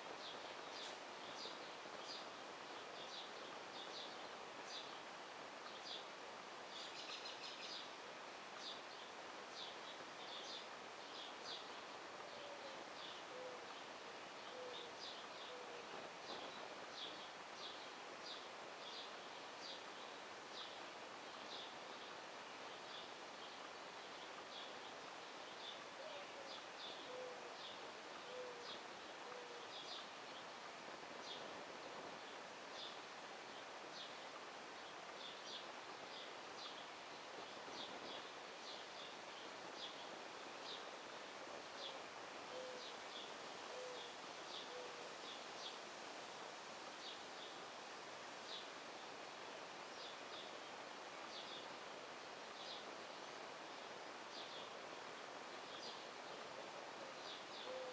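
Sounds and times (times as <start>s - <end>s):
dove cooing: 27.1s - 27.5s, 28.2s - 29.6s, 42.5s - 42.9s, 43.7s - 44.1s, 57.6s - 57.9s.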